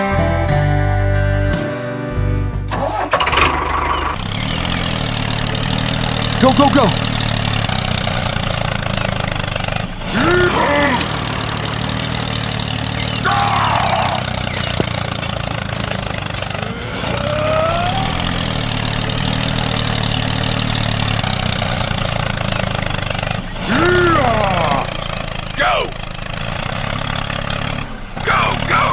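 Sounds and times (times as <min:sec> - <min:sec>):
small engine idling: 0:02.6 - 0:28.9
short high calls: 0:11.0 - 0:20.0.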